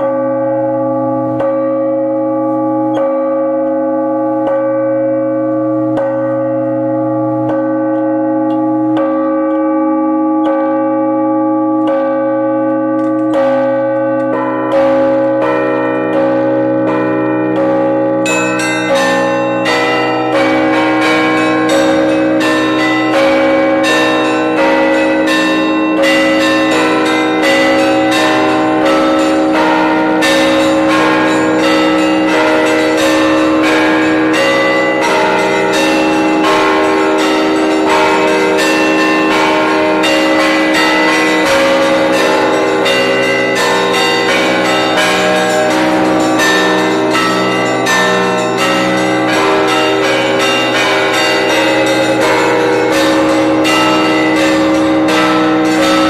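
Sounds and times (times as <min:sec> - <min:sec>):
middle bells ringing: 0:00.0 - 0:56.0
deep bell struck: 0:11.8 - 0:56.0
small high bells striking: 0:18.2 - 0:56.0.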